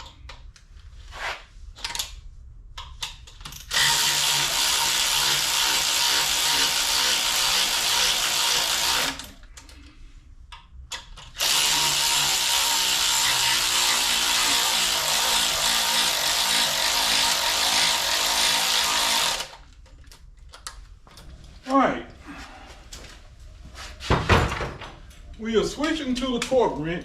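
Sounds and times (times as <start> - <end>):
power tool running: 3.7 - 9.3, 11.4 - 19.6.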